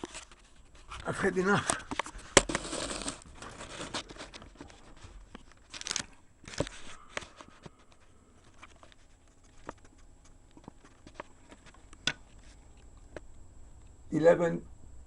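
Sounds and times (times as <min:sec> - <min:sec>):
rustling handling noise: 0:00.0 - 0:13.3.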